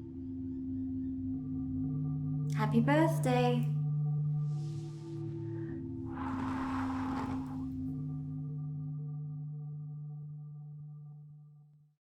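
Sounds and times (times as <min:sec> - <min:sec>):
ambient drone music: 0:00.0 - 0:02.5.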